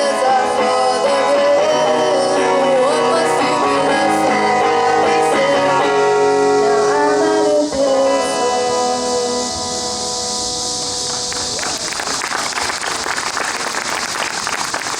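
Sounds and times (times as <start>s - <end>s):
strummed guitar chord: 0.0s - 11.5s
guitar and voice: 0.0s - 12.1s
applause: 11.1s - 14.9s.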